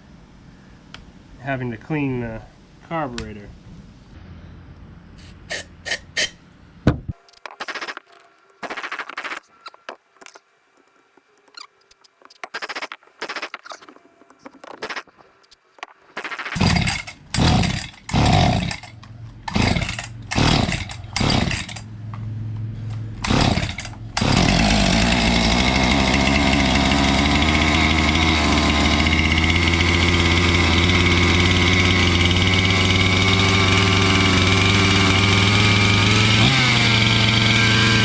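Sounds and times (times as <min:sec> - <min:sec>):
recoil starter cord yanks: 0:11.4 - 0:21.9, 0:22.9 - 0:38.0
chainsaw engine sputtering and idling: 0:16.2 - 0:22.0, 0:23.2 - 0:38.0.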